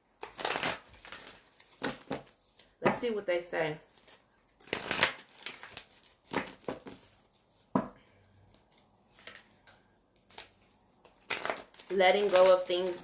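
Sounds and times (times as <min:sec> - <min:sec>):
cards being shuffled: 0:08.5 - 0:13.0.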